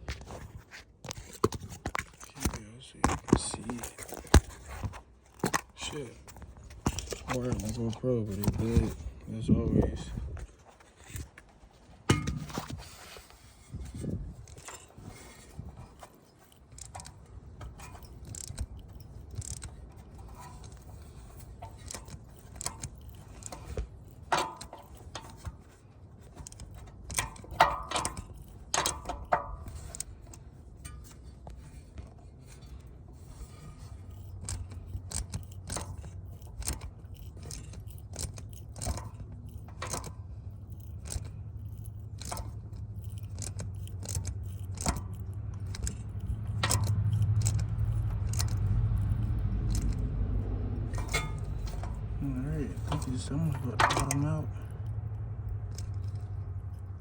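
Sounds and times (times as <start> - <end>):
low steady hum: 2.2 - 57.0
wrench turning thread tap clicks: 34.1 - 50.0.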